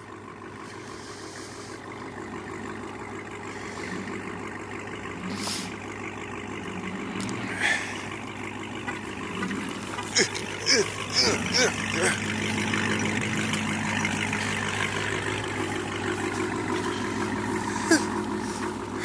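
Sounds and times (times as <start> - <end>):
car engine running at low revs: 0.0 - 19.0
short hisses: 5.3 - 5.8.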